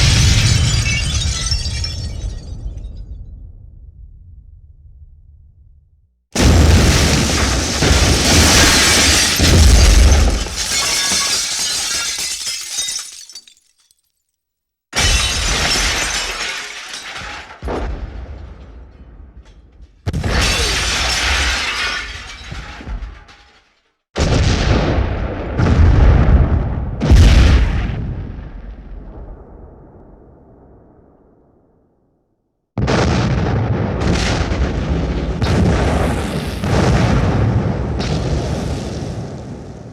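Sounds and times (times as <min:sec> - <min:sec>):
explosion blasts: 0:00.0 - 0:05.8, 0:06.4 - 0:11.4, 0:24.2 - 0:31.7, 0:32.8 - 0:39.9.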